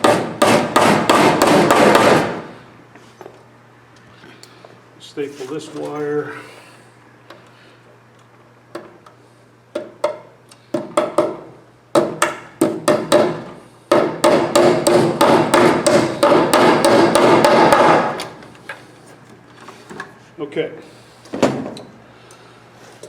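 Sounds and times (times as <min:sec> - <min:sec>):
hammer tapping staples: 0:00.0 - 0:02.3, 0:09.7 - 0:18.4.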